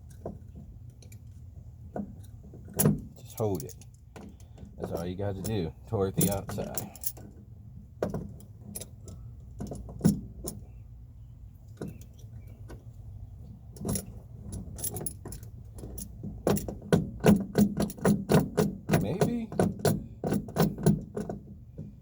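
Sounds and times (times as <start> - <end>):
metal parts and tool clicking: 2.2 - 7.3, 13.8 - 21.4.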